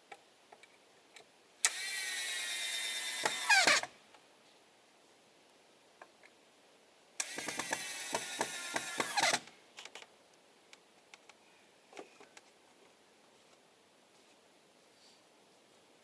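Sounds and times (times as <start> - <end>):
power tool rattling: 1.7 - 3.9, 7.2 - 9.5.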